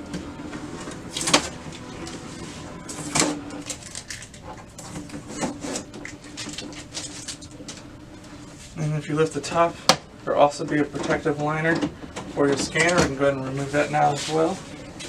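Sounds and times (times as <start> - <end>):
printer humming: 0.0 - 15.0
tape being peeled off: 0.8 - 8.4.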